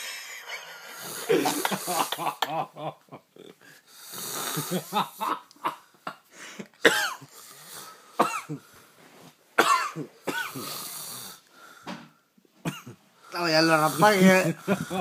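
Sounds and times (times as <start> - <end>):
man snoring loudly: 0.9 - 2.1, 3.9 - 5.0, 10.5 - 11.4.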